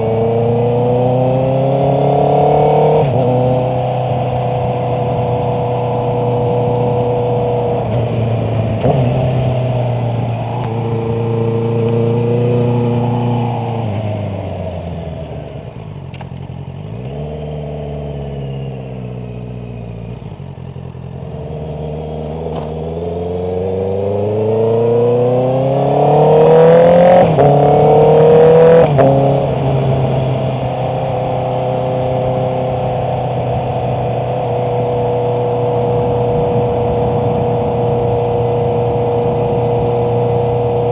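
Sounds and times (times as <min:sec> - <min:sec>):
motorcycle engine revving: 0:00.0 - 0:40.9.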